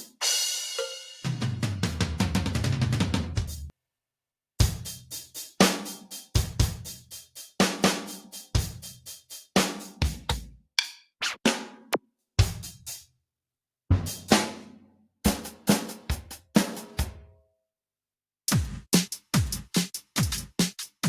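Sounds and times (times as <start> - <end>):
cymbal hits: 0.6 - 1.3
kick drum hits: 18.5 - 19.6
hi-hat hits: 18.5 - 21.0.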